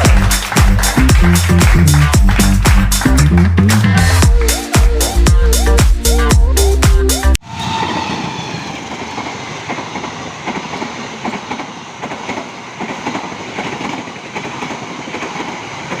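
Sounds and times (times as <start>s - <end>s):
train wheels rumbling: 0.0s - 4.7s, 7.5s - 16.0s
wheels clacking over rails: 7.6s - 16.0s.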